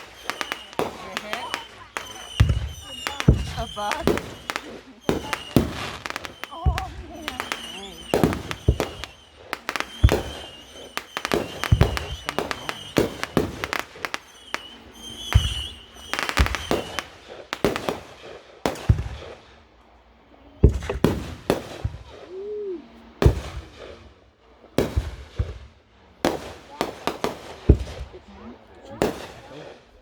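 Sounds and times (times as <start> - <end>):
fireworks bangs: 0.0 - 19.8, 20.5 - 30.0.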